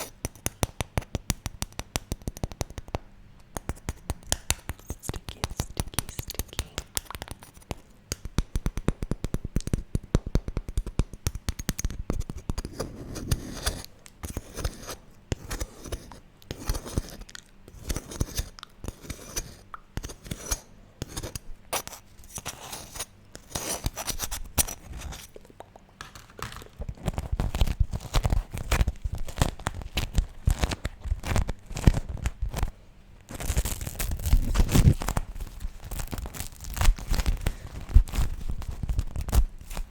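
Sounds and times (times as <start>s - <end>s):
wax wrap crackling and peeling: 21.2s - 39.9s.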